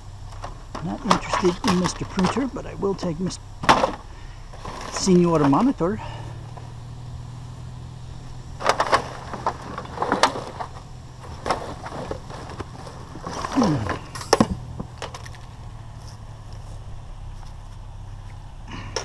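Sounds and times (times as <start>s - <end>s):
steady low hum: 0.0s - 19.0s
scrap knocking and clattering: 0.3s - 2.5s, 3.6s - 5.8s, 8.6s - 15.4s.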